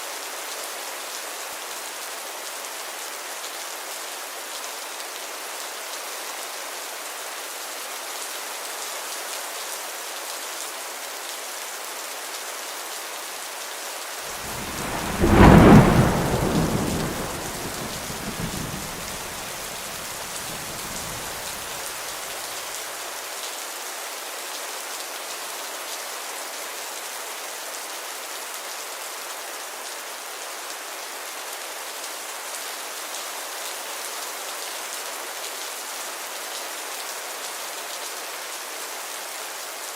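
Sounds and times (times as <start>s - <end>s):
heavy rain: 0.1s - 39.9s
thunder crack: 14.4s - 21.8s.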